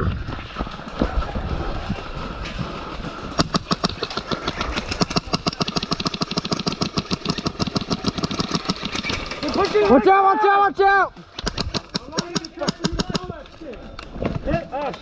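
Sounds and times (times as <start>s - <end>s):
airsoft guns firing full auto: 3.4s - 10.0s, 11.3s - 13.3s.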